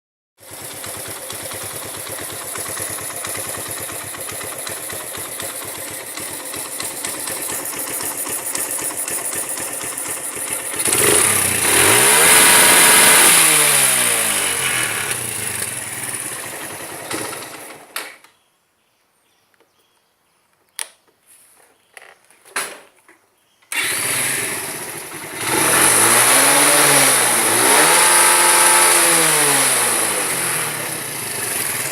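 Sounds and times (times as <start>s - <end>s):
motorcycle engine idling with ticking: 0.4s - 13.1s, 14.1s - 17.8s, 27.7s - 31.9s.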